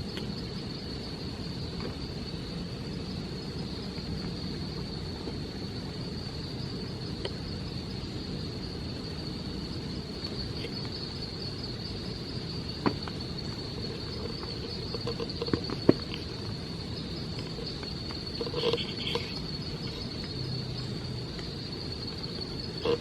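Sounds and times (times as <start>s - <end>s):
insects buzzing: 0.0s - 23.0s.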